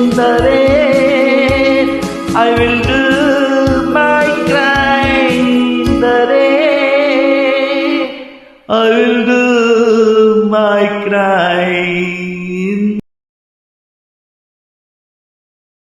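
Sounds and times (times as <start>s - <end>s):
soft backing music: 0.0s - 9.4s.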